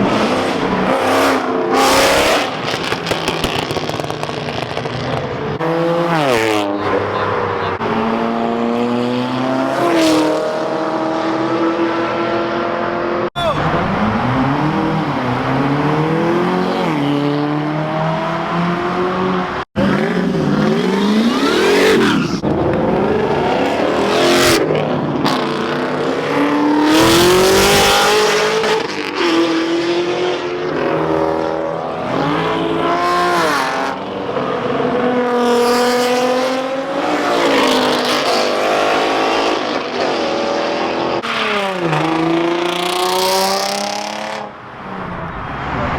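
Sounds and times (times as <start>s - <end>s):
car engines revving and accelerating: 0.0s - 45.9s.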